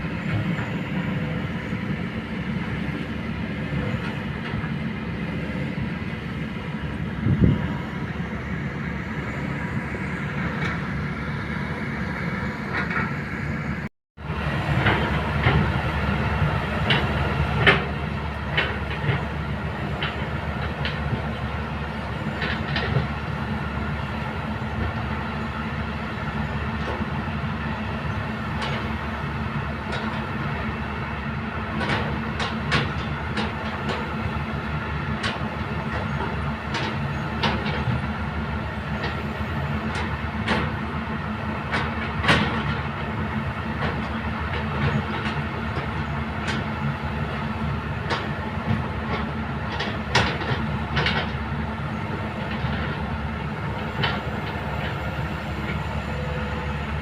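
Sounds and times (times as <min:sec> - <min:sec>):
excavator diesel engine running: 0:00.0 - 0:57.0
metallic clanks and knocks: 0:41.7 - 0:42.8, 0:48.1 - 0:51.4.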